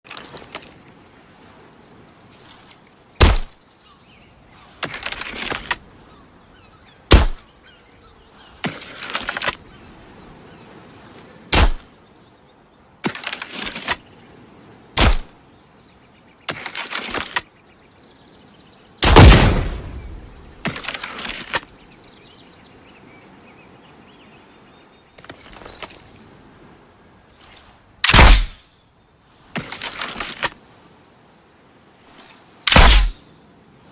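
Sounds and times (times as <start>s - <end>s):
slingbow sharp snaps: 32.7s - 33.2s.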